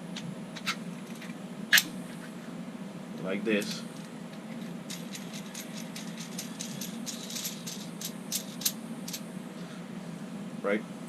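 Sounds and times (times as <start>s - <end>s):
steady low hum: 0.0s - 11.0s
small parts clicking and rattling: 3.6s - 9.2s.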